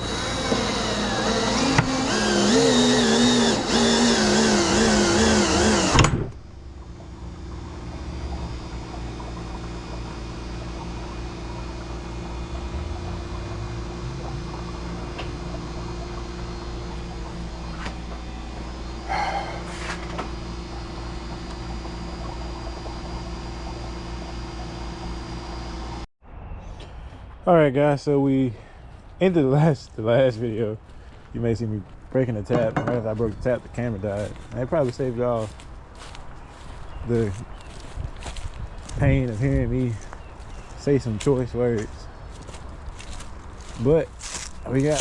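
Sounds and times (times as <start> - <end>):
power drill running under load: 0.0 - 6.1
steady low hum: 0.0 - 26.1, 27.6 - 45.0.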